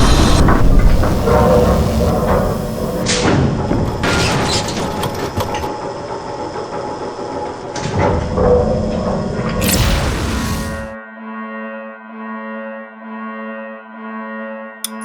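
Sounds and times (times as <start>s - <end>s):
sudden rushes of noise: 0.0s - 3.2s, 9.4s - 11.0s
mechanical clanking: 0.0s - 11.0s.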